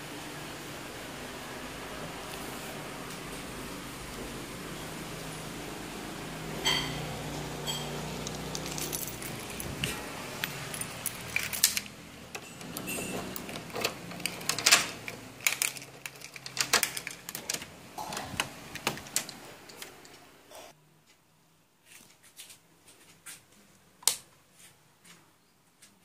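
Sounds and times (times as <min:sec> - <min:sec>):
small hard parts clicking and rattling: 0:07.7 - 0:20.2.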